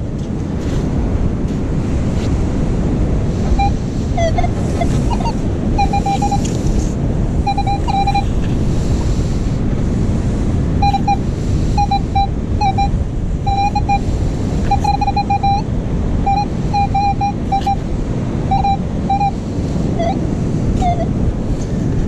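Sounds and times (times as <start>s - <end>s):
surf rushing: 0.0s - 22.0s
wind buffeting microphone: 0.0s - 22.0s
metal detector beeps: 3.5s - 6.6s, 7.4s - 8.4s, 10.8s - 17.8s, 18.5s - 19.4s, 20.0s - 20.2s, 20.8s - 21.1s.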